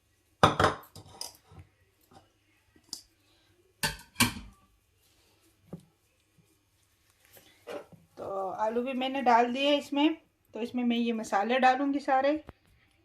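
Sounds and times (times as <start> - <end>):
dishes clattering: 0.4 - 1.5, 3.8 - 4.5.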